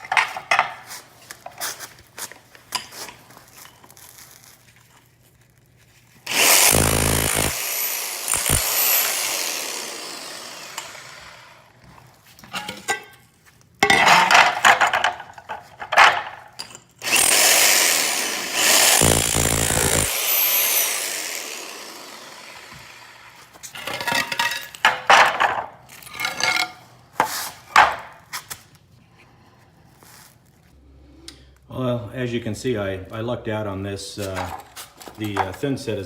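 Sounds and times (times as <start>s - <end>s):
rotary hammer chipping tile: 6.3s - 9.4s, 18.6s - 21.1s.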